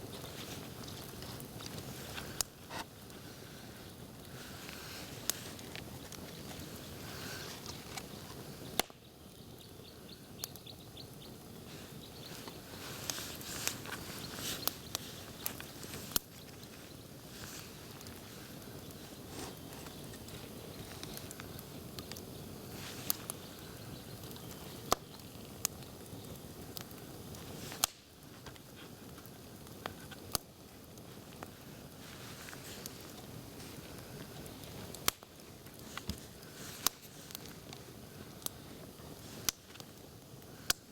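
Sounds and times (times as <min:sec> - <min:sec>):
campfire crackling: 0:00.0 - 0:40.9
bird chirping: 0:09.0 - 0:12.6.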